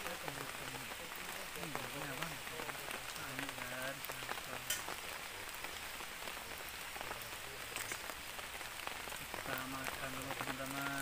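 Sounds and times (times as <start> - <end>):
heavy rain falling: 0.0 - 11.0
individual raindrop hits: 0.0 - 11.0.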